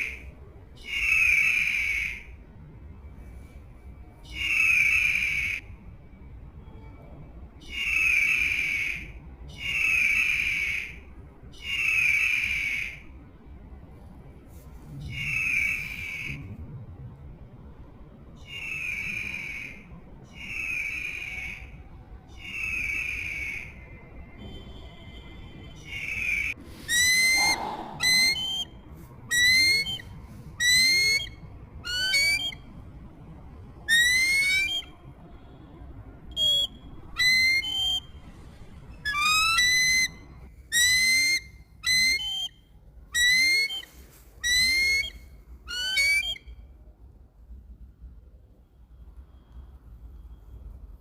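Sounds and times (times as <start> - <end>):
kites calling shrill whistles: 25.9 - 32.6, 33.9 - 35.0, 36.3 - 38.2, 39.1 - 42.6, 43.2 - 46.4.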